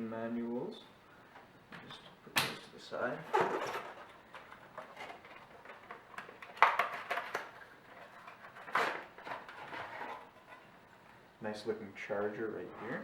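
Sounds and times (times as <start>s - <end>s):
packaging rustling: 3.3s - 10.7s.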